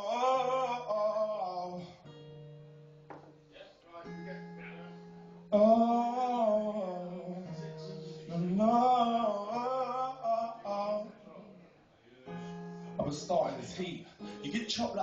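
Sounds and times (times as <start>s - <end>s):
acoustic guitar: 0.0s - 15.0s
person singing wordless notes: 4.1s - 11.6s.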